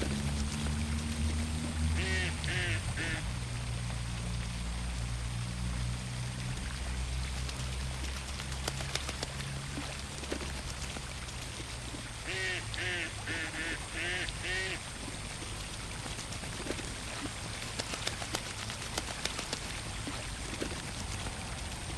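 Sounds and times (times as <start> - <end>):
steady low hum: 0.0 - 21.9
duck quacking: 2.0 - 3.3, 12.3 - 14.8.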